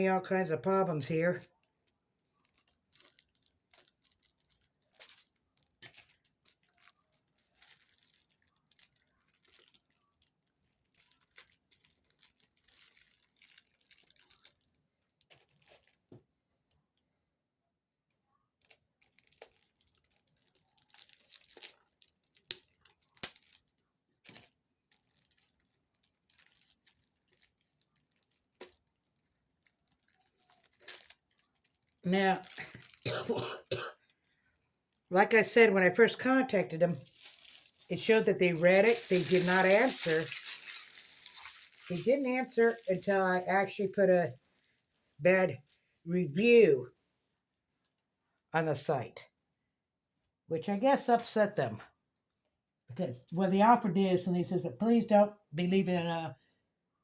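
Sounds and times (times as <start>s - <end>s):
packaging crinkling and tearing: 1.1s - 16.1s, 18.5s - 35.1s, 37.0s - 44.8s.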